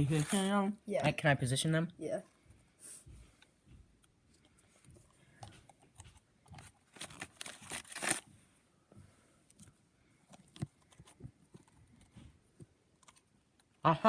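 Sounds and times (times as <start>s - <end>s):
cookies crackling and crunching: 5.0s - 8.3s.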